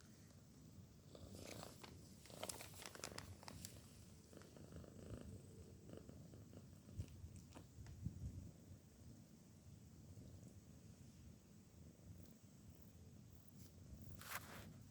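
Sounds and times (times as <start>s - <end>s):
cat snoring: 4.3s - 7.1s.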